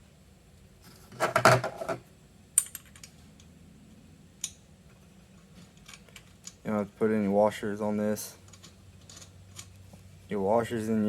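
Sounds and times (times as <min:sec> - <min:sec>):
metal parts and bolts clattering: 0:05.3 - 0:06.7, 0:08.4 - 0:09.8.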